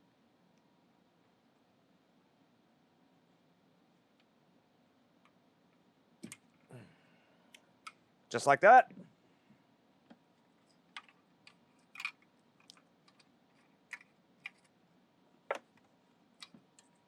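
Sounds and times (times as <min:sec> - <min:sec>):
hands handling wiring and parts: 0:10.0 - 0:14.8.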